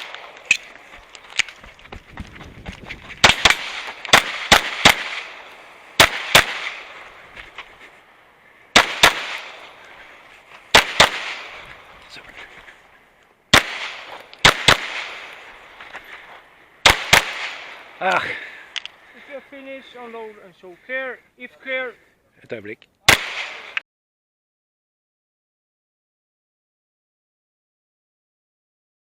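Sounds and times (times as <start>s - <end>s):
handgun shots: 23.1s - 23.8s.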